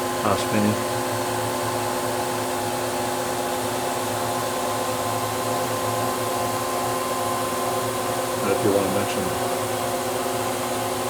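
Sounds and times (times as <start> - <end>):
idling milling machine hum: 3.7 - 11.0.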